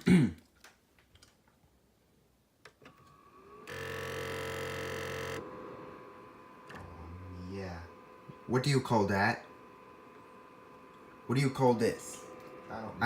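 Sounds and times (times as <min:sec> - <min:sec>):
game console mechanism whirring: 0:02.7 - 0:13.0.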